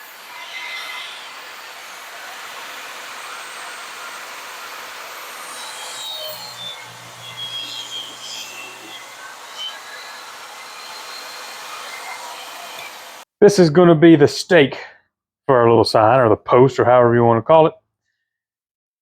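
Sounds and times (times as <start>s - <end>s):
table saw cutting wood: 0.0s - 13.2s.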